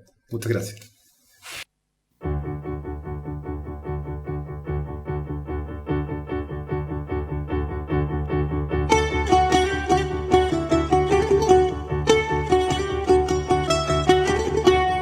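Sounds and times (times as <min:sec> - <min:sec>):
bouzouki plucked notes: 0:08.8 - 0:15.0.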